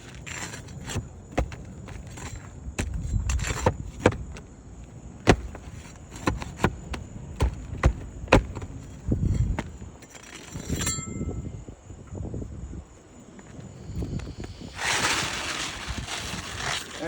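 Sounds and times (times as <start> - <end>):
sharp knocks and taps: 5.3 - 8.8.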